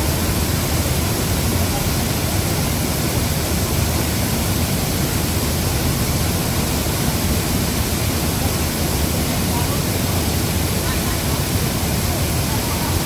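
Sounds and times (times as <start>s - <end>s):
waterfall rushing over rocks: 0.0s - 13.0s.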